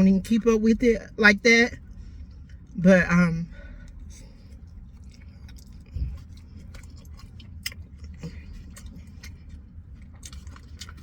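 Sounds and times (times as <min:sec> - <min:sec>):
person chewing food: 0:03.8 - 0:11.0.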